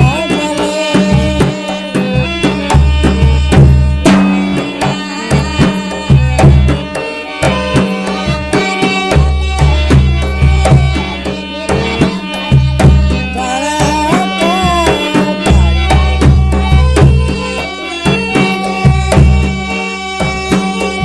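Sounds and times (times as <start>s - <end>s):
hand drum rhythm: 0.0s - 21.0s
sustained melodic accompaniment: 0.0s - 21.0s.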